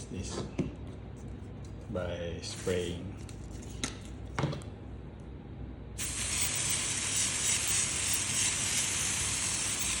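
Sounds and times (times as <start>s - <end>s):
aerosol can spray hissing: 6.0s - 10.0s.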